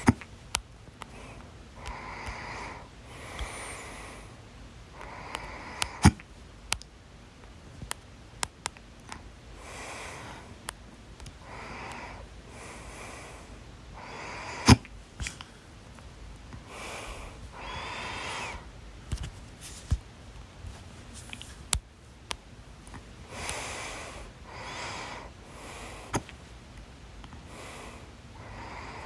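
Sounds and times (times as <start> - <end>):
person breathing: 1.1 - 4.4, 5.0 - 6.1, 9.6 - 10.6, 11.4 - 15.8, 16.6 - 20.0, 23.2 - 26.3, 27.4 - 29.0.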